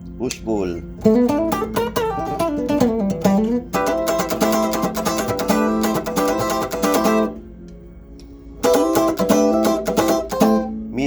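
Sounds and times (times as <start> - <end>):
electric guitar strummed chords: 0.9 - 7.7, 8.6 - 11.0
clean electric guitar notes: 8.6 - 11.0.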